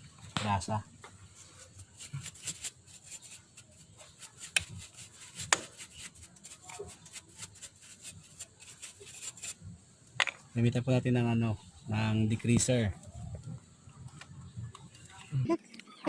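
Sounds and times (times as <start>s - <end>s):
rubbing and scraping: 1.2s - 9.7s.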